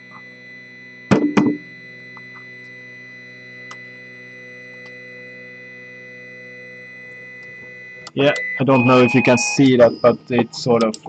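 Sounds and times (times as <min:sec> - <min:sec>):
printer fans humming: 0:08.0 - 0:11.0.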